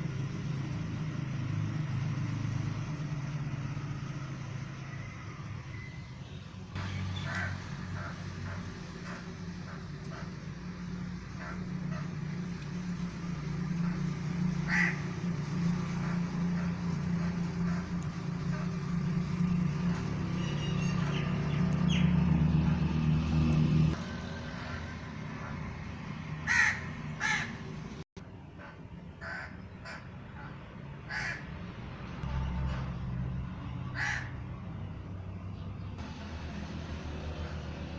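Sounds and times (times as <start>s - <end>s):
crows cawing: 6.8s - 10.4s, 13.8s - 15.3s, 26.4s - 27.6s, 28.6s - 31.5s, 33.9s - 34.4s.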